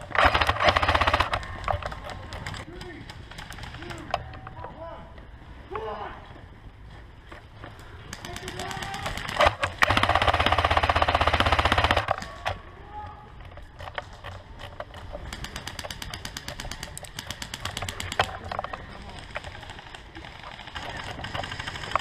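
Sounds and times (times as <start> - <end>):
airsoft guns firing rapidly: 0.0 - 4.1, 8.0 - 12.6, 15.2 - 22.0.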